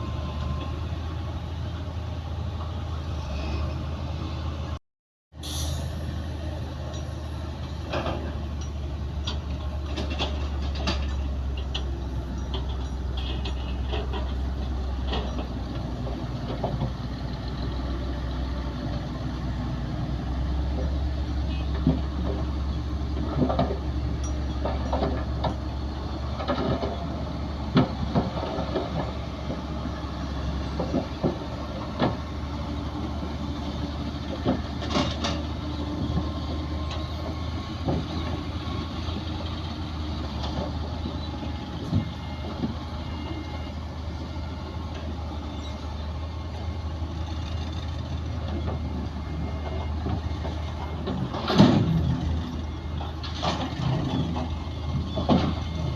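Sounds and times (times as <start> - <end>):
heavy diesel machinery running: 0.0 - 55.9
metal clanks and knocks: 7.8 - 17.0, 20.7 - 29.7, 30.7 - 32.3, 34.2 - 38.5, 48.4 - 55.9.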